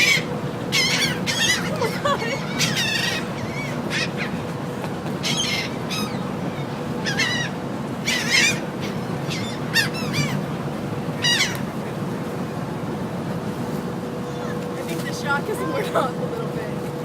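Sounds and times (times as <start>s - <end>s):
gulls calling: 0.0s - 12.7s
ferry engine hum: 0.0s - 17.0s.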